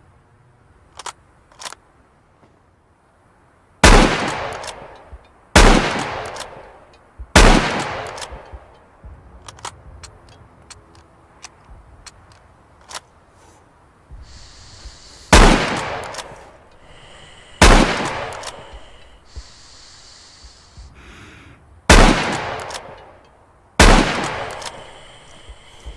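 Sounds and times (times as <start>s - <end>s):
small clicks: 0.9s - 1.9s, 4.3s - 5.4s, 6.0s - 7.1s, 7.8s - 13.2s, 14.2s - 17.0s, 17.6s - 20.8s, 22.3s - 23.4s, 24.2s - 25.9s
rifle shots with echo: 3.8s - 4.9s, 5.6s - 6.6s, 7.3s - 8.4s, 15.3s - 16.4s, 17.6s - 18.8s, 21.9s - 23.0s, 23.8s - 25.0s
light ticks: 6.0s - 13.1s, 18.0s - 20.9s, 24.2s - 25.9s.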